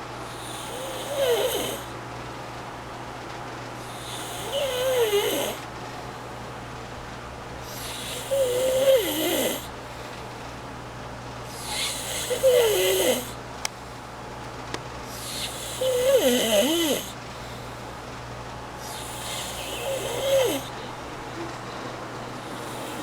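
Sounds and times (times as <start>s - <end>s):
person snoring: 0.5s - 1.8s, 11.6s - 13.4s, 15.2s - 17.1s, 19.0s - 20.7s.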